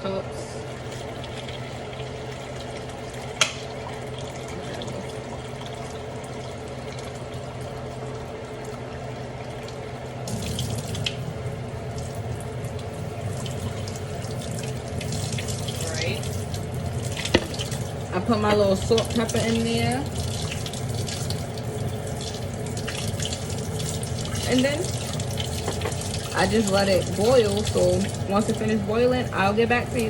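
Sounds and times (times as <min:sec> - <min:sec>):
tap running water into a cup: 0:00.9 - 0:06.3, 0:12.0 - 0:28.7.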